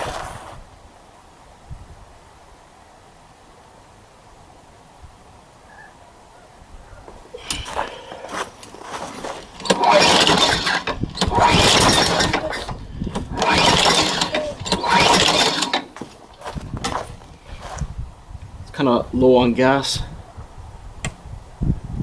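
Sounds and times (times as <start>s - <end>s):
lawnmower engine sputtering: 7.4s - 17.8s.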